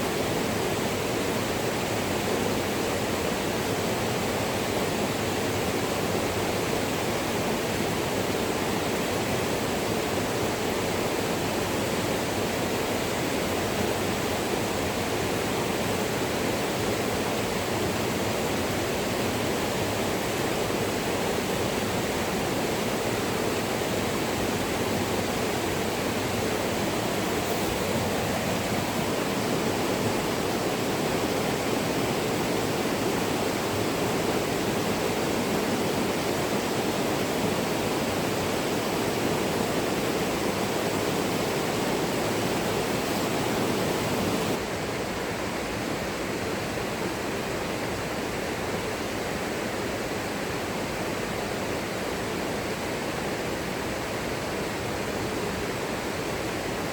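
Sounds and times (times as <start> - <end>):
river water rushing: 14.3 - 44.9.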